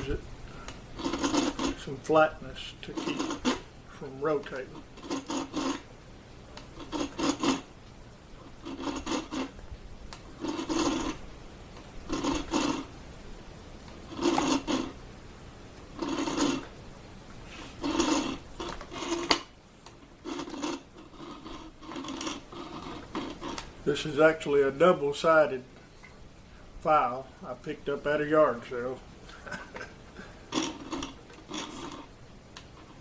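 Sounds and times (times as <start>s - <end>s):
hand file rasping on metal: 1.0s - 1.9s, 2.8s - 3.7s, 4.5s - 5.8s, 6.8s - 7.7s, 8.4s - 9.6s, 10.4s - 11.2s, 12.1s - 12.9s, 14.1s - 15.0s, 16.0s - 16.7s, 17.5s - 19.4s, 20.2s - 23.7s, 30.5s - 32.1s.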